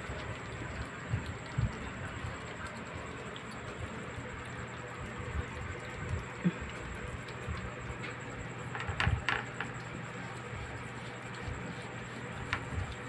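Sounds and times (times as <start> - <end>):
cats eating clicks and taps: 0.0 - 13.0
steady low hum: 0.0 - 13.0.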